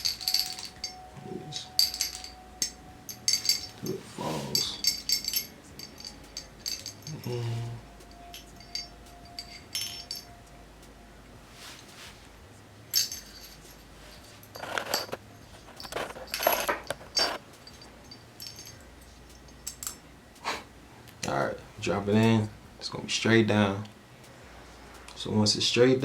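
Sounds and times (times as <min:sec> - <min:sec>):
small steel parts clicking: 0:00.0 - 0:07.4, 0:08.0 - 0:10.3, 0:12.9 - 0:13.8, 0:14.4 - 0:20.0.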